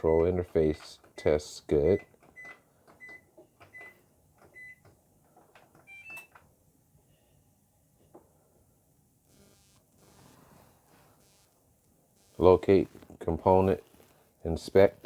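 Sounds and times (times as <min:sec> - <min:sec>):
appliance touchpad beeping: 0:00.0 - 0:00.4, 0:01.9 - 0:04.8, 0:05.8 - 0:06.4.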